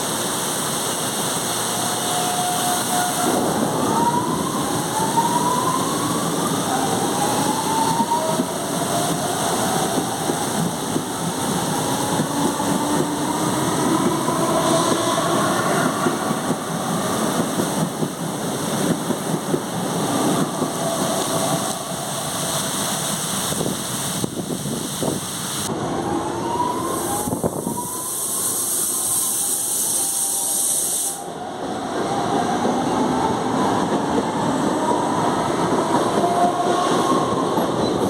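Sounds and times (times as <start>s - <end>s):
wheels rumbling on rail: 0.0s - 30.5s, 31.6s - 38.0s.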